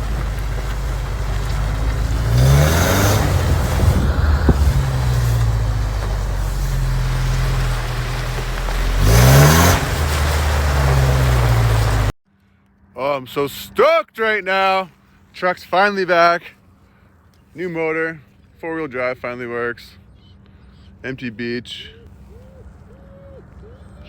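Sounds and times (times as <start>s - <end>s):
truck engine revving: 0.0s - 12.1s.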